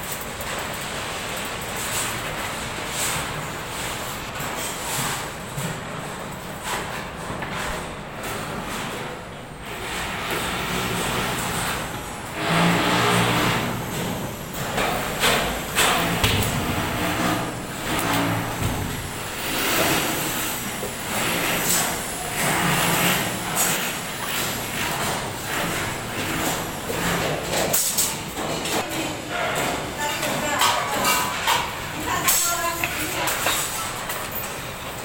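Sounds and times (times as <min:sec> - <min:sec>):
knocks and clanks: 0:09.8 - 0:34.4.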